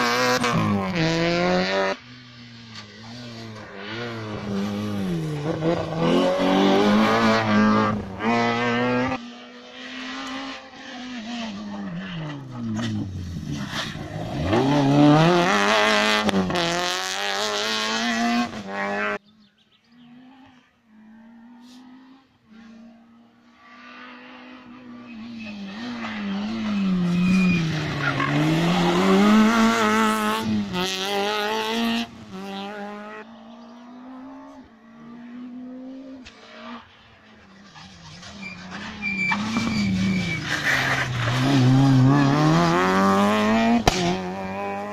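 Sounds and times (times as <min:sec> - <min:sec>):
rally car engines revving: 0:00.0 - 0:44.9
tyre squeal: 0:25.0 - 0:29.2, 0:37.7 - 0:41.6.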